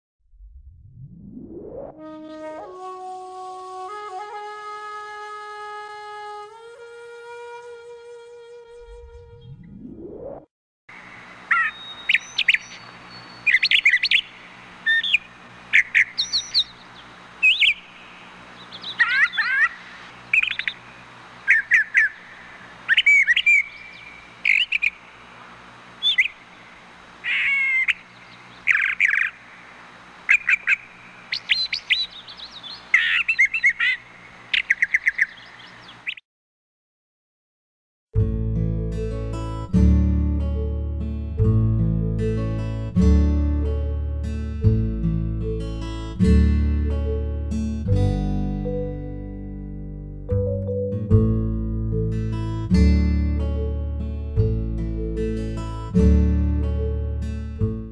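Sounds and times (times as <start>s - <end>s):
bird singing whistles and chirps: 11.5s - 18.0s, 18.6s - 20.9s, 22.9s - 25.0s, 26.0s - 26.4s, 27.3s - 29.4s, 30.3s - 36.2s.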